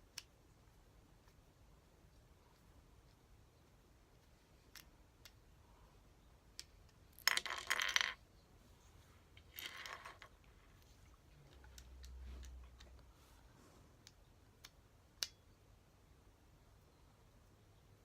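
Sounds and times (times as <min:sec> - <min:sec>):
plastic puzzle pieces clattering: 0:07.2 - 0:08.2, 0:09.4 - 0:10.4.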